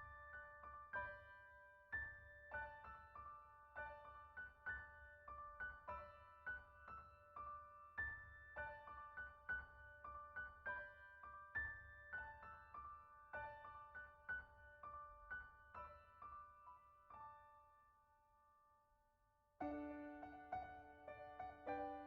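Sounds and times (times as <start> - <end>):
electric piano pattern: 19.6 - 22.0.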